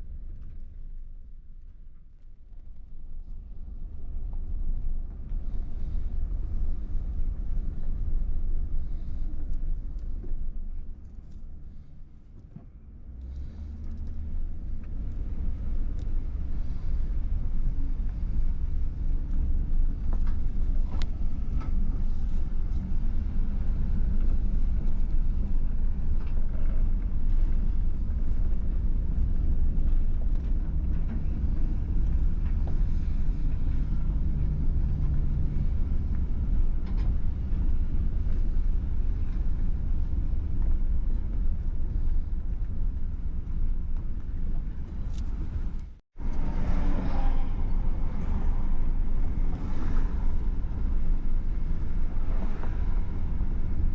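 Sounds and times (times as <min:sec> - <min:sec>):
vehicle rumble: 0:00.0 - 0:53.9.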